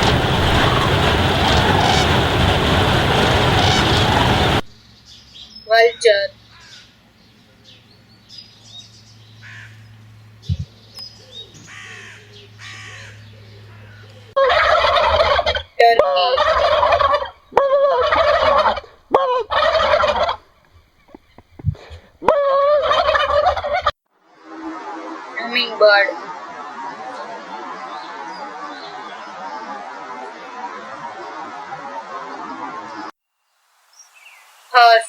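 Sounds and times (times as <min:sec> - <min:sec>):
low hum: 0:00.0 - 0:04.7
faint bird calls: 0:09.4 - 0:14.4
turkey gobbling: 0:14.4 - 0:20.6, 0:22.3 - 0:23.9.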